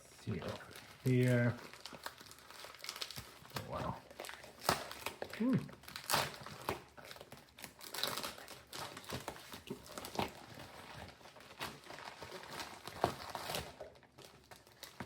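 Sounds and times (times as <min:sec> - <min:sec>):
packaging crinkling: 0:00.2 - 0:15.0.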